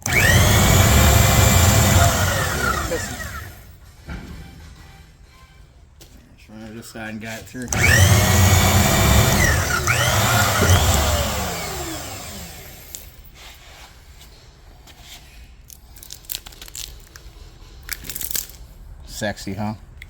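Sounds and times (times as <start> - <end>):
power tool motor running: 0.0 - 3.7, 7.7 - 13.2.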